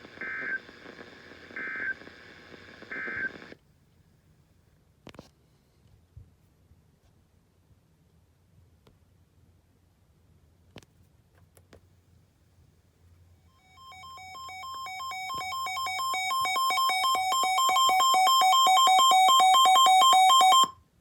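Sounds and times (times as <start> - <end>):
warbling two-tone electronic beep: 13.6 - 20.7.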